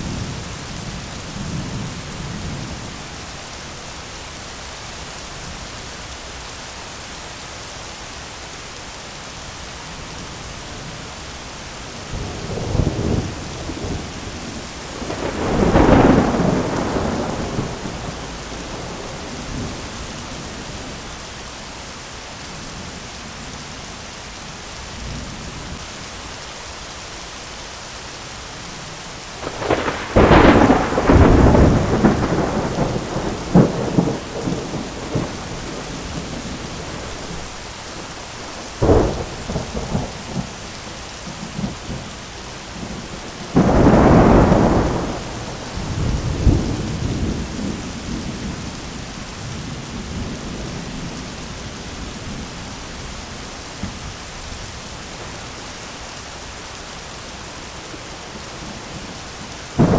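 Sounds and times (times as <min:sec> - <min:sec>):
heavy rain: 0:00.0 - 0:59.9
thunder rumbling and cracking: 0:12.0 - 0:20.4, 0:29.4 - 0:42.1, 0:42.7 - 0:52.6.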